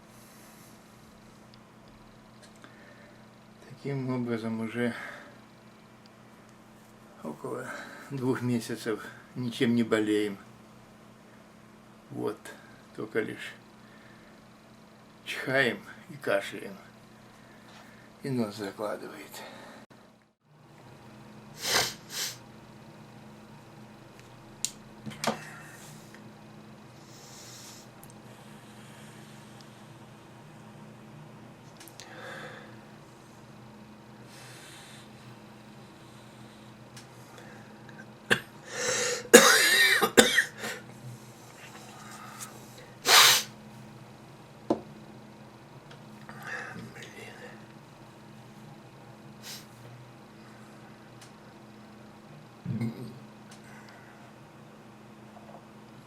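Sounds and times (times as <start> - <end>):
man sneezing: 21.6 - 22.4, 38.3 - 40.8, 43.0 - 43.5
man coughing: 38.3 - 38.5, 39.1 - 40.8
nasal burst: 43.0 - 43.6
faint low hum: 43.6 - 56.0.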